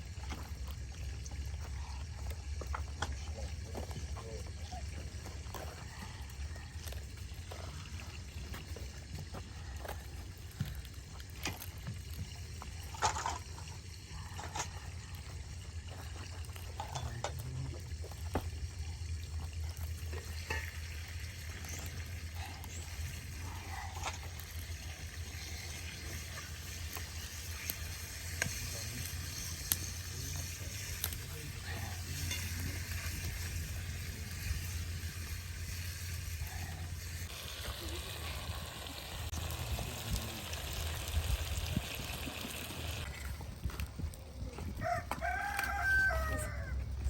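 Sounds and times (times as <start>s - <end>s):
food sizzling in a pan: 24.3s - 43.3s.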